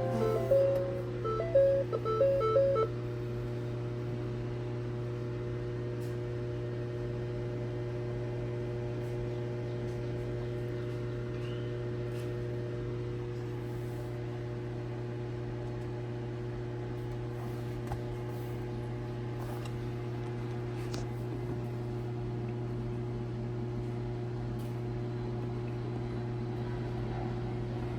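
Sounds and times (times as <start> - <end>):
faint even tones: 0.0 - 2.9
steady low hum: 0.0 - 3.7.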